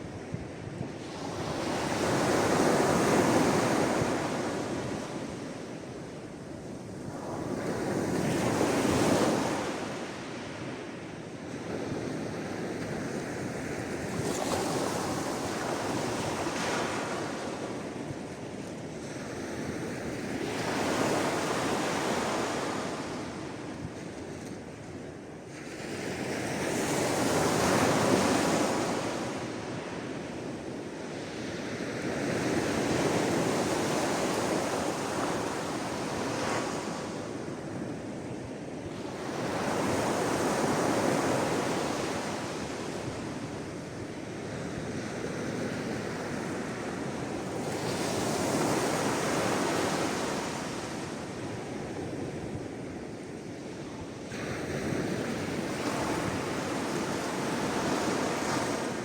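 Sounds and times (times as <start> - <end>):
sea waves breaking on shore: 54.3 - 59.0.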